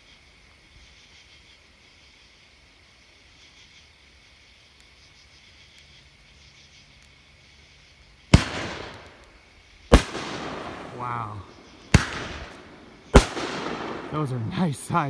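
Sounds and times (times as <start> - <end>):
crickets chirping: 0.0 - 15.0
firework bang with echo: 8.4 - 9.2, 9.9 - 15.0.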